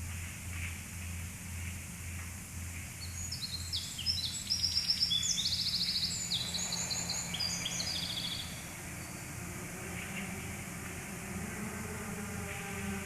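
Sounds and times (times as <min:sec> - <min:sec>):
steady low hum: 0:00.0 - 0:13.0
songbird singing trills: 0:03.0 - 0:11.1.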